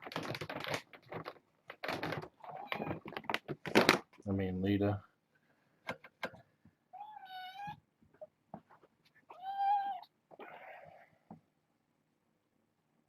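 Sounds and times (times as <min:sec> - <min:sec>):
kitten meowing: 0:07.0 - 0:07.8, 0:09.3 - 0:10.8.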